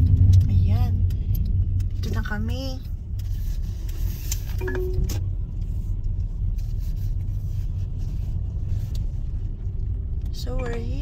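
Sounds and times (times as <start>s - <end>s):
car driving rumble inside cabin: 0.0s - 11.0s.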